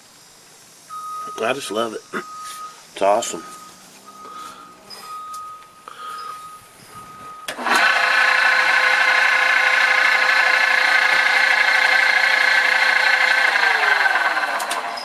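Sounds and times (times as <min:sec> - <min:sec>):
table saw whining: 0:06.2 - 0:15.0.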